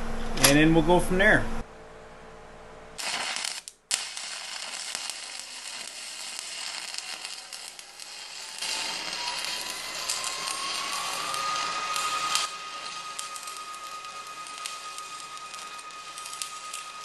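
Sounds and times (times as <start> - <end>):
welding arc crackling: 3.0 - 17.0
faint rising tone: 5.4 - 17.0.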